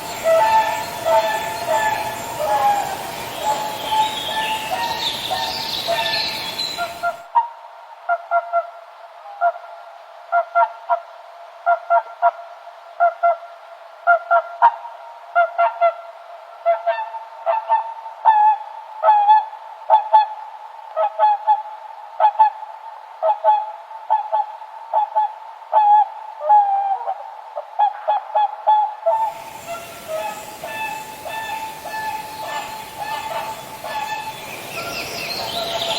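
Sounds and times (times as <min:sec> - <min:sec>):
swans calling: 0:00.0 - 0:07.2, 0:29.1 - 0:35.9
steady hiss: 0:00.0 - 0:08.0, 0:29.1 - 0:35.9.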